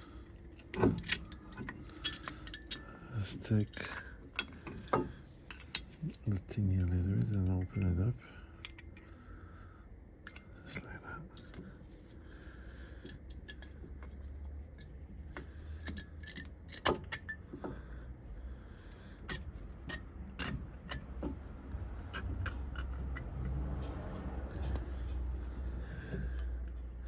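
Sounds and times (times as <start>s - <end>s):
low steady hum: 0.0s - 27.0s
metallic clicks and clinks: 0.5s - 9.1s, 13.0s - 17.8s, 18.8s - 27.0s.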